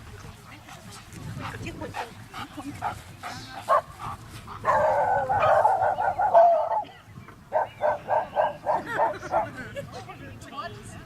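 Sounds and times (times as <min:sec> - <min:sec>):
dogs barking: 0:03.7 - 0:03.9, 0:04.6 - 0:06.9, 0:07.5 - 0:09.7.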